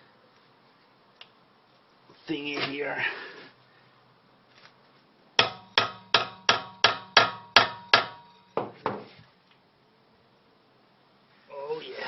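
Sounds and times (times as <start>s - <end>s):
hammer striking metal: 5.4s - 8.7s.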